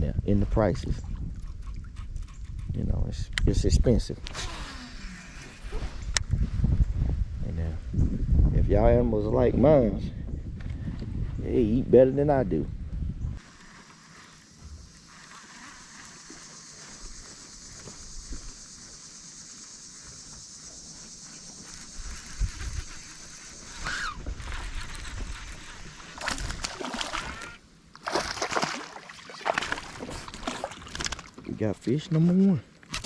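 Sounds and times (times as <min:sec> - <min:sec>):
steady high hiss: 0:13.4 - 0:24.2
water splashing against boat: 0:24.2 - 0:31.7.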